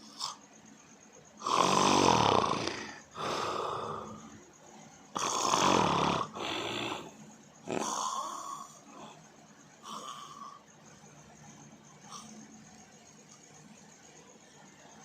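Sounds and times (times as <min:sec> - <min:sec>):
person snoring: 0:01.4 - 0:04.4, 0:05.2 - 0:09.2, 0:09.8 - 0:10.6.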